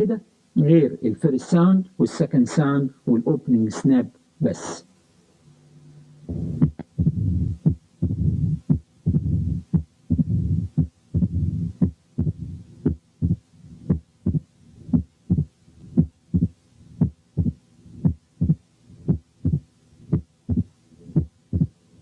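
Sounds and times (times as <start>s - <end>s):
heart sounds through stethoscope: 6.3s - 21.8s.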